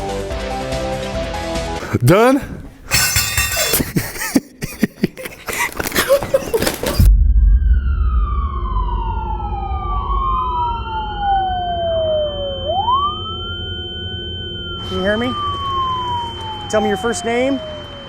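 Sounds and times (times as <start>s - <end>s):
siren wailing: 7.4s - 18.0s.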